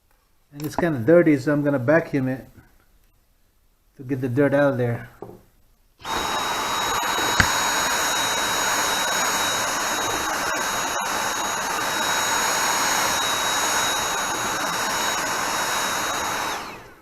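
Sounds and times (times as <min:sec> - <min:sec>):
vacuum cleaner running: 0:06.0 - 0:17.0.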